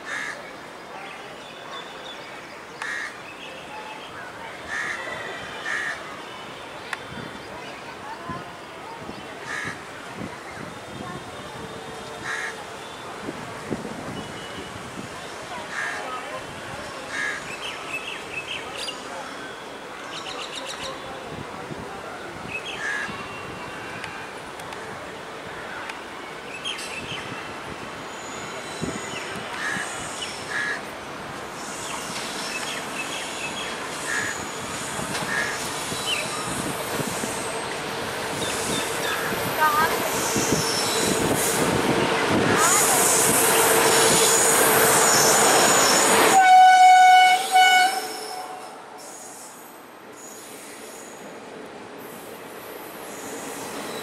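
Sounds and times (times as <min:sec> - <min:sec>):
train running on tracks: 0:00.0 - 0:54.0
train horn blasts: 0:43.0 - 0:49.0.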